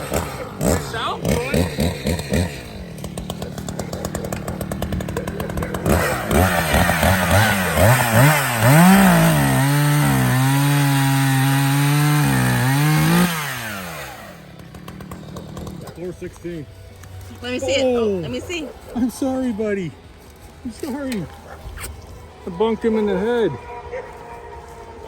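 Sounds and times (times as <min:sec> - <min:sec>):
chainsaw cutting through log: 0:00.0 - 0:17.7
chainsaw idling and revving: 0:00.0 - 0:19.3.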